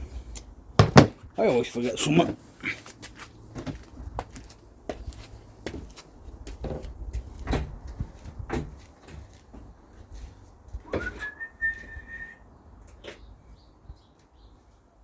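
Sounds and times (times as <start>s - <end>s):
tools clunking on a workbench: 0.8s - 1.2s
rising whistled note: 10.9s - 12.4s.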